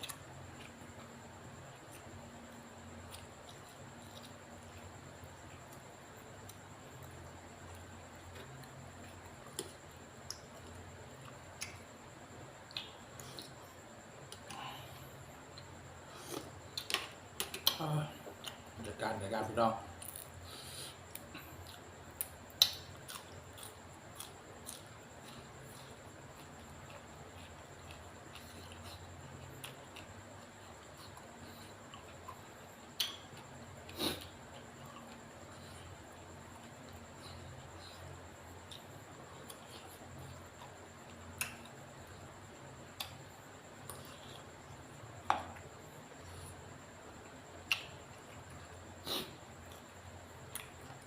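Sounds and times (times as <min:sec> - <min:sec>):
faint low hum: 0:00.0 - 0:51.0
chewing: 0:01.8 - 0:11.9, 0:20.0 - 0:42.3, 0:42.9 - 0:46.6, 0:47.2 - 0:51.0.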